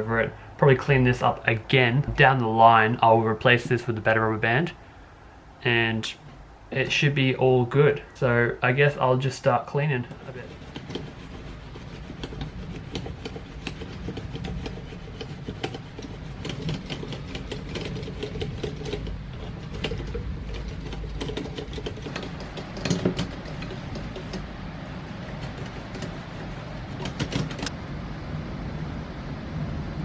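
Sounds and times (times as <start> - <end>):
low steady hum: 0.0 - 30.0
clicks taps and rubbing on plastic: 10.0 - 27.7.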